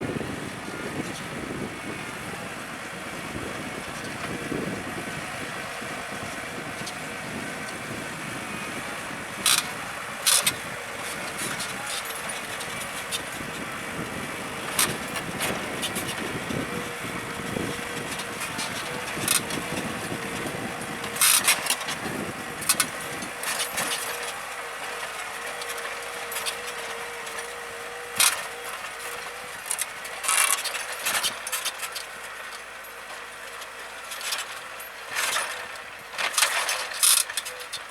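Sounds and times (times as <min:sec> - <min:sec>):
steady whine: 0:00.0 - 0:29.8
tractor engine under load: 0:00.0 - 0:37.9.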